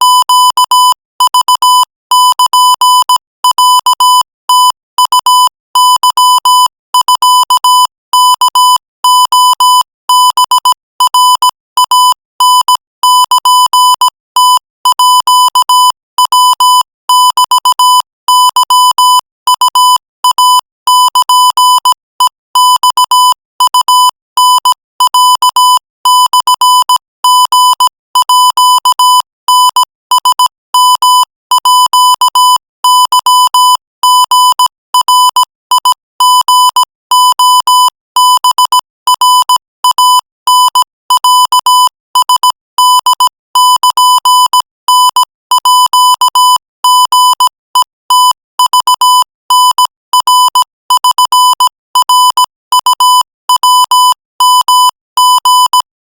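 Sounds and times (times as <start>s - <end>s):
morse code beeping tone: 32.1s - 55.9s.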